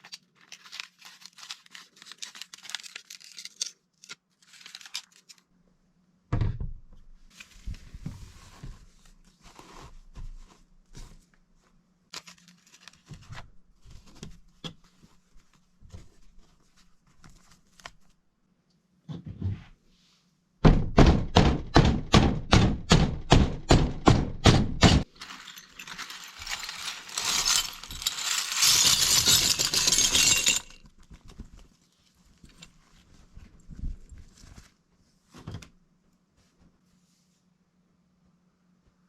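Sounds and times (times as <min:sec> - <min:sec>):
hammer crushing glass: 0:24.8 - 0:30.8
broken glass crunching and rattling: 0:25.1 - 0:30.9.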